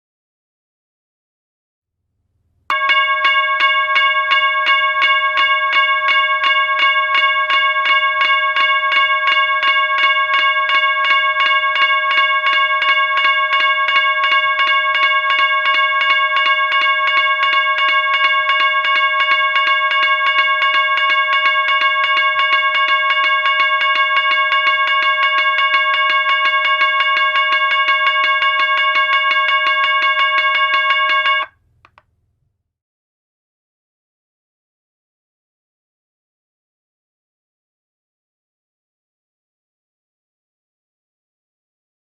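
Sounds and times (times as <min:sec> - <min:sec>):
railway crossing bell ringing: 0:02.7 - 0:31.5.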